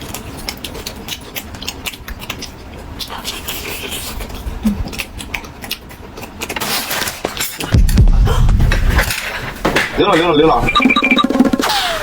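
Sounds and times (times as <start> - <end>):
person chewing: 0.0 - 8.0.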